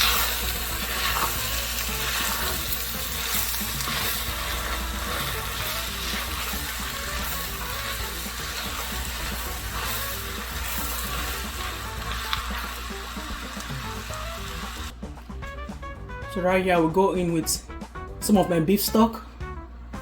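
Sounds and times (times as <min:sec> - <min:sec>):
sauce sizzling in a pot: 0:00.0 - 0:15.9.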